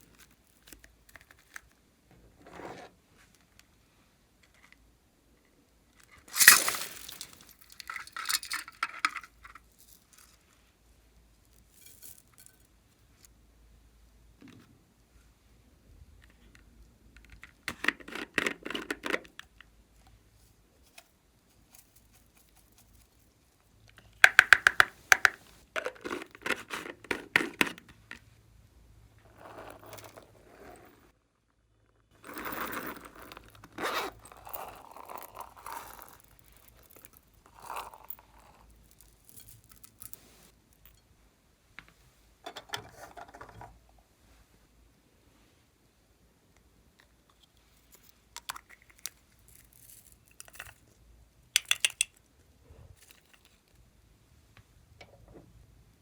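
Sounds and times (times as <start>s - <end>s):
slime crackling and scraping: 6.3s - 7.9s.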